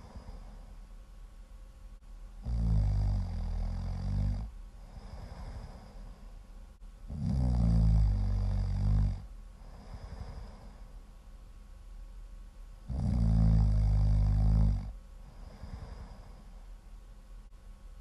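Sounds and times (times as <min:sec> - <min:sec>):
quiet breathing: 0:00.0 - 0:01.2, 0:02.5 - 0:11.4, 0:12.8 - 0:17.6
loud snoring: 0:02.4 - 0:06.0, 0:07.1 - 0:10.8, 0:12.9 - 0:16.4.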